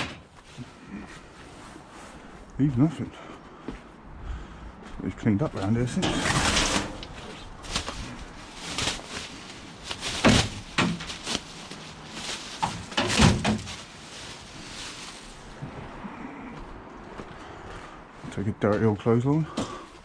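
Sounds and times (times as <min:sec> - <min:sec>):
scrap metal clanking: 0:05.9 - 0:14.0.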